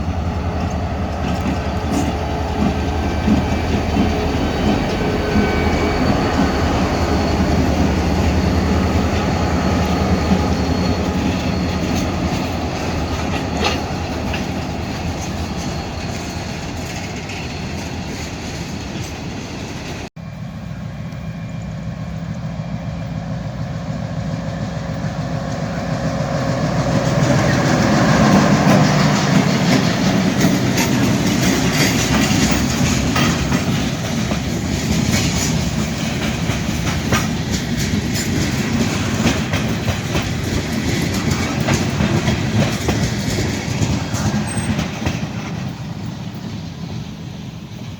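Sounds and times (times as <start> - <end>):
wheels clicking over rail joints: 0.0 - 20.1, 24.8 - 47.9
freight train passing: 0.0 - 47.9.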